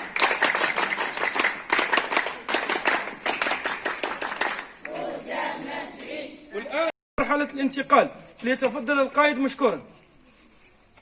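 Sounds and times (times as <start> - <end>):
crowd clapping: 0.0 - 5.1
indistinct voices: 4.8 - 6.9.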